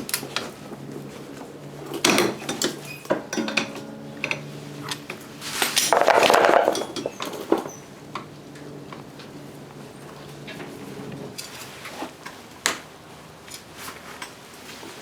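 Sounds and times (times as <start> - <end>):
metal tools clinking and knocking: 2.0 - 7.8
rattling clatter: 2.0 - 7.8.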